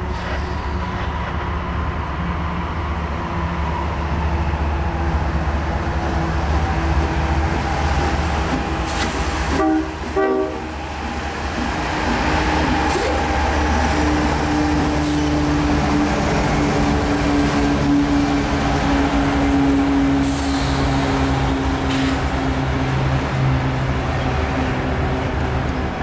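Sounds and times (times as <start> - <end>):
diesel train rumbling: 0.0 - 26.0
train horn blast: 9.5 - 10.8.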